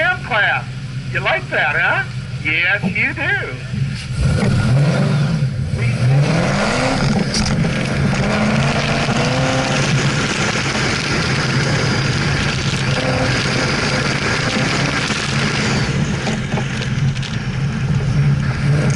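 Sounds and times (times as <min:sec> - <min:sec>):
car engine accelerating hard: 0:03.6 - 0:18.9.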